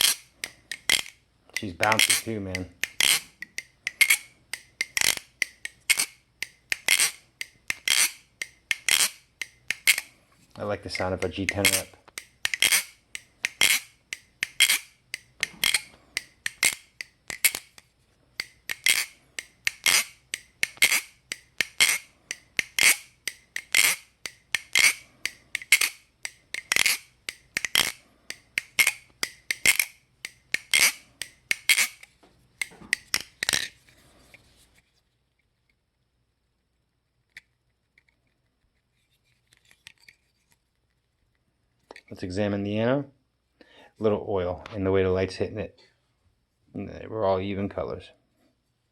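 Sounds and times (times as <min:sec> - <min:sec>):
butterfly knife clicking: 0:00.0 - 0:10.1, 0:11.4 - 0:17.8, 0:18.4 - 0:33.7.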